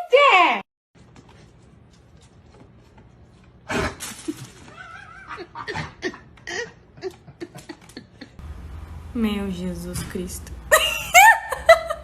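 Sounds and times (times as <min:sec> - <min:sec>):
person laughing: 0:04.2 - 0:08.4, 0:10.7 - 0:12.0.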